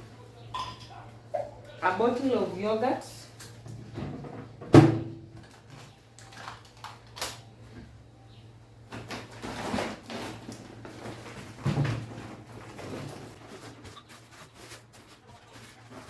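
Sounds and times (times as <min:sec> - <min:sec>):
groceries knocking: 0:08.9 - 0:16.0.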